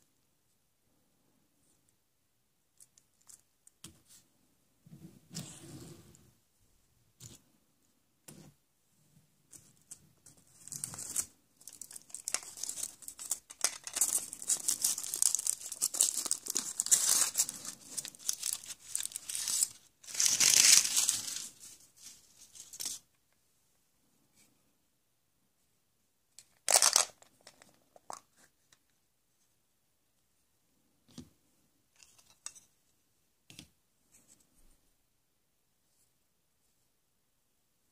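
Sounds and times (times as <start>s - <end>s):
wrapper crinkling and tearing: 10.6s - 23.0s, 26.6s - 27.7s.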